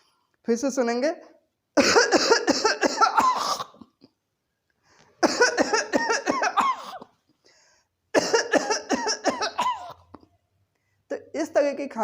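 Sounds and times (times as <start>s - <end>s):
child coughing: 1.8s - 4.0s, 5.2s - 7.2s, 8.1s - 10.2s.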